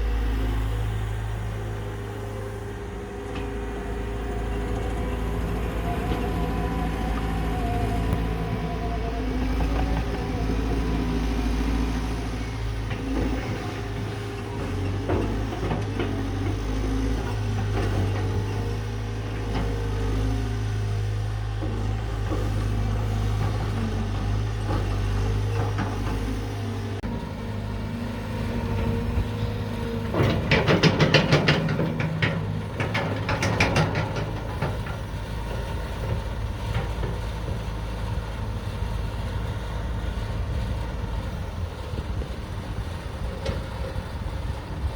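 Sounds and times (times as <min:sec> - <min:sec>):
excavator diesel engine running: 0:00.0 - 0:44.9
metallic clanks and scraping: 0:30.0 - 0:35.2.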